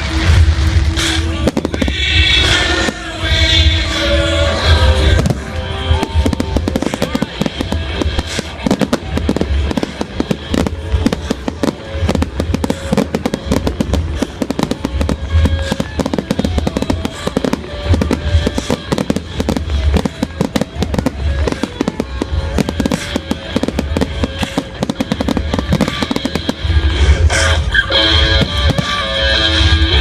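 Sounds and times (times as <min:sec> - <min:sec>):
fireworks crackling and popping: 0:00.0 - 0:30.0.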